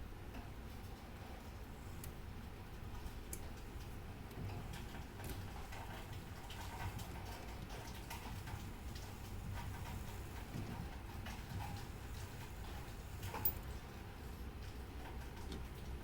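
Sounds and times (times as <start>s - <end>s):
low background hum: 0.0s - 16.0s.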